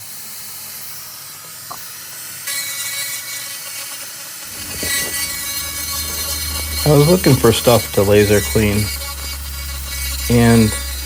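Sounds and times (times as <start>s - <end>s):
laser cleaner hissing: 0.0s - 11.0s
low hum: 4.5s - 11.0s.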